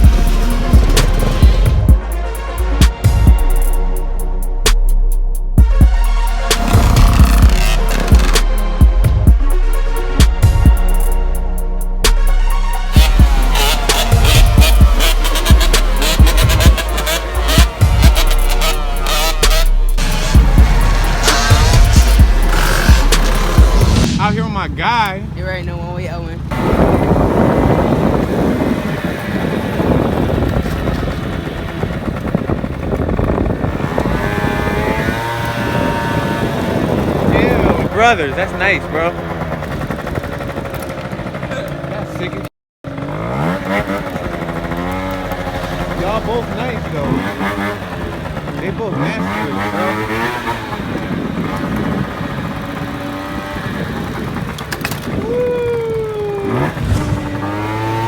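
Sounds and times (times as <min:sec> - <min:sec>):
scooter engine running: 0:00.0 - 0:02.0, 0:06.6 - 0:09.4, 0:12.9 - 0:24.1, 0:25.2 - 0:58.0
engine revving: 0:00.0 - 0:04.9, 0:05.5 - 0:58.0
wind rumble: 0:12.1 - 0:41.5, 0:42.9 - 0:58.0.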